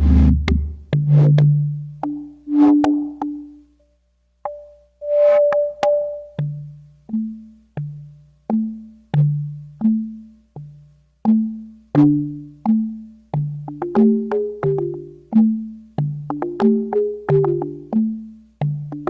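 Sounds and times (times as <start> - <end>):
synthesizer bass line: 0.0 - 1.4
synthesizer plucked notes: 0.0 - 3.6, 4.5 - 7.5, 16.3 - 18.2.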